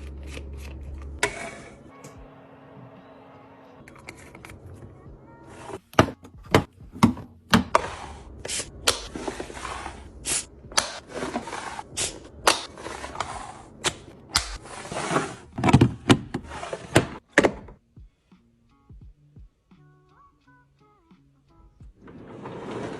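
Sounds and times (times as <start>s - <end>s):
items clacking and knocking: 10.7s - 17.8s.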